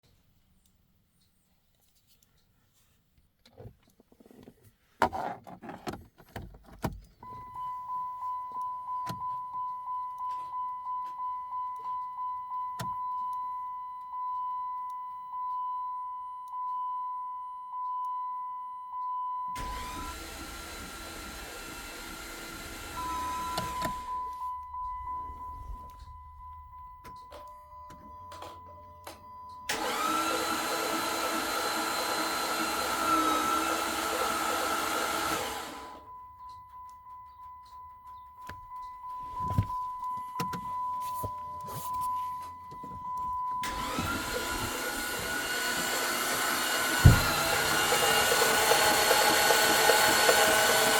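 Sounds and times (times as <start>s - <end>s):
car pulsing whining tone: 19.6s - 36.2s, 38.4s - 50.9s.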